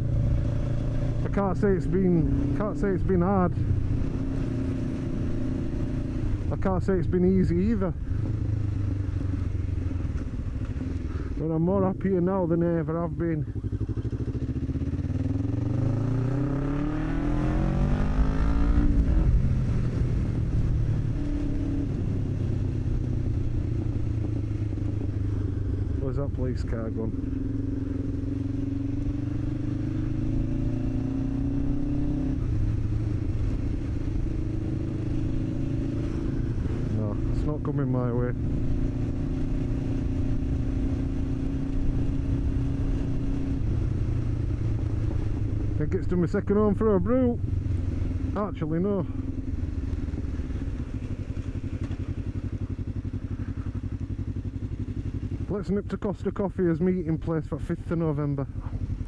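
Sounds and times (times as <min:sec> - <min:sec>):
motorcycle engine running: 0:00.0 - 0:59.0.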